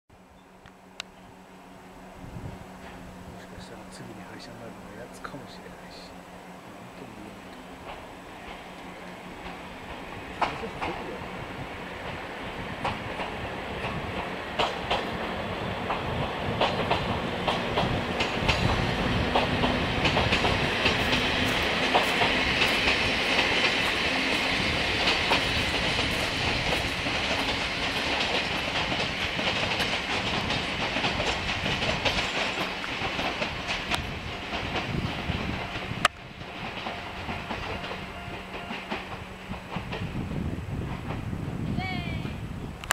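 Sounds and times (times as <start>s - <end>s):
train wheels clacking over rail joints: 7.5s - 41.4s.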